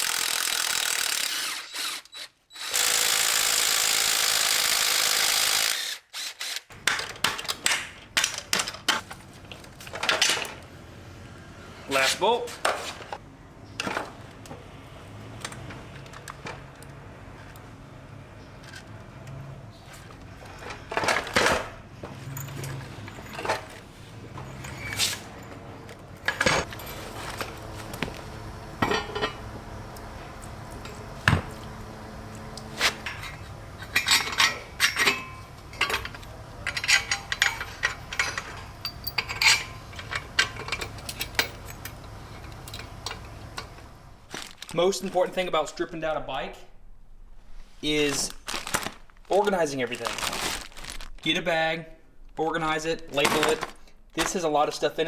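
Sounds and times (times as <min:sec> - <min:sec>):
metal tools clinking and knocking: 0:06.8 - 0:10.6, 0:20.5 - 0:28.2, 0:28.8 - 0:29.6, 0:32.8 - 0:43.9.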